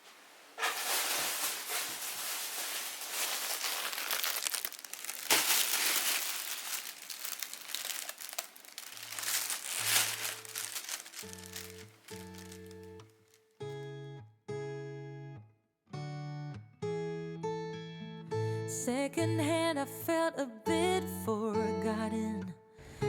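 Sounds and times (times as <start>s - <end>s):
crinkling and rustling: 0.0s - 13.4s.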